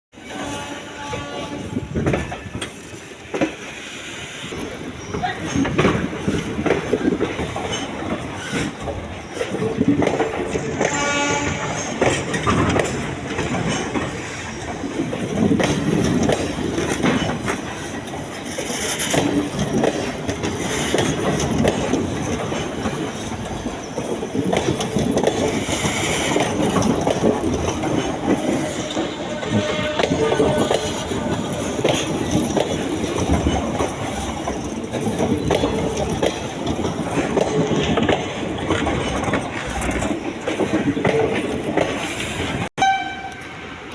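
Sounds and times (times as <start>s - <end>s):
train horn blast: 0.2s - 1.9s, 10.8s - 12.0s, 28.8s - 31.4s, 42.8s - 43.7s
train wheels clattering on rails: 0.2s - 43.9s.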